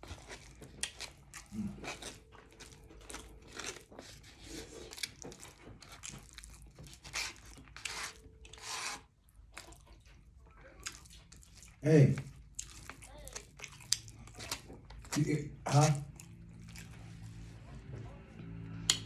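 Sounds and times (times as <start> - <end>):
person chewing: 0.0 - 17.6
rasping and rubbing noises: 1.6 - 9.2.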